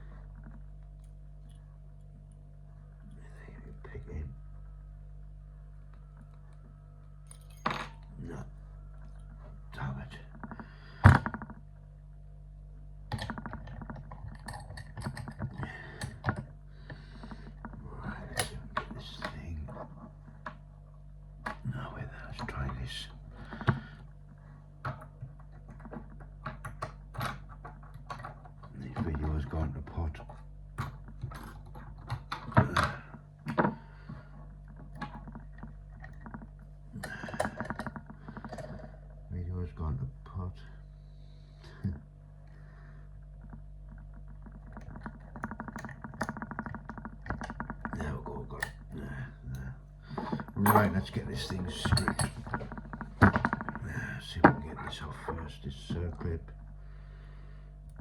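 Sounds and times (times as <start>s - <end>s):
steady low hum: 0.0s - 58.0s
lock picking clicks and rattles: 13.1s - 16.5s, 44.3s - 48.0s, 50.4s - 53.8s.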